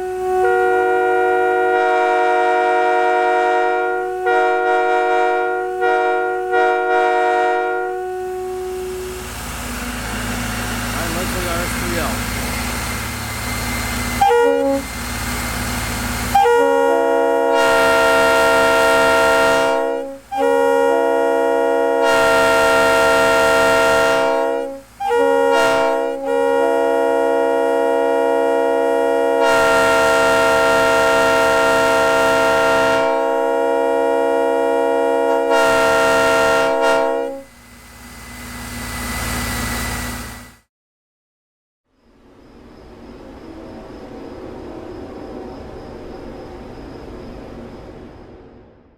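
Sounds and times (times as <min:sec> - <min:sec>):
air horn blowing a chord: 0:00.0 - 0:12.2, 0:14.1 - 0:15.1, 0:16.2 - 0:37.6.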